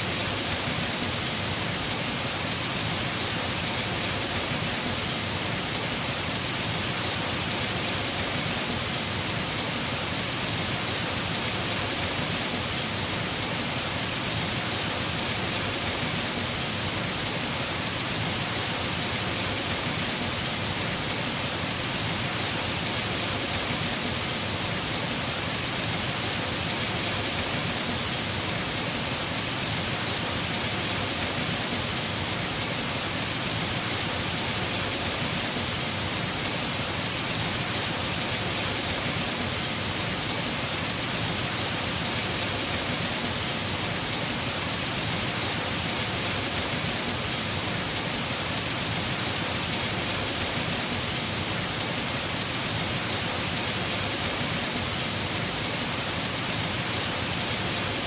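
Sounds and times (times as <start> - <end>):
heavy rain on a roof: 0.0 - 58.0.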